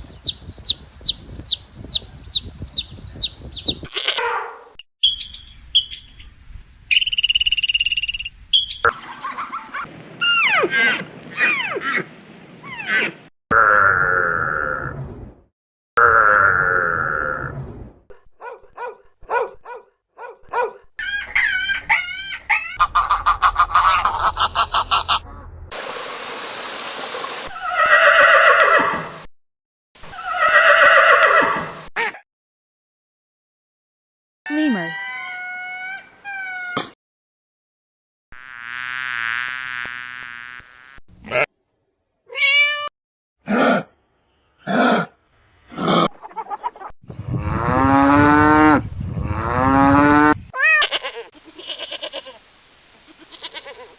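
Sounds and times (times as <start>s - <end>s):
animal high chirps: 0.1s - 4.2s, 6.9s - 8.9s
steady hiss: 25.7s - 27.5s, 51.4s - 53.9s
horse whinnying: 27.5s - 29.0s, 30.1s - 31.7s.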